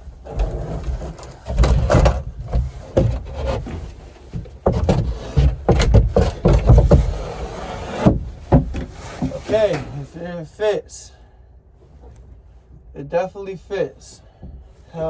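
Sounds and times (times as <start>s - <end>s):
wooden panel scraping against frame: 0.2s - 10.1s
wood knocking on wood: 1.5s - 9.9s.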